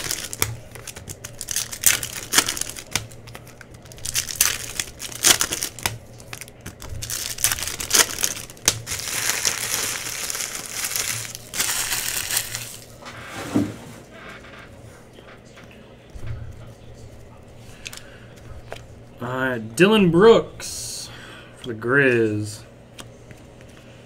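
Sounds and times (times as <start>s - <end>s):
wrappers crinkling and tearing: 0.0s - 13.0s.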